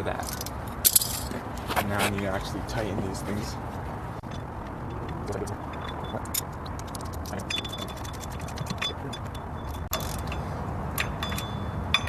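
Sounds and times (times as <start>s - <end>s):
ratchet wrench clicking: 5.4s - 12.0s.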